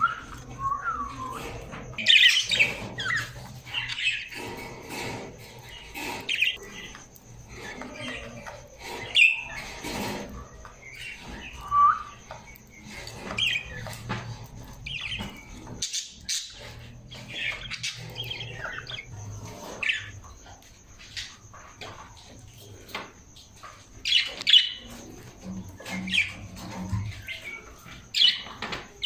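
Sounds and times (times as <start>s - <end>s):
parrots squawking and chirping: 0.0s - 20.4s.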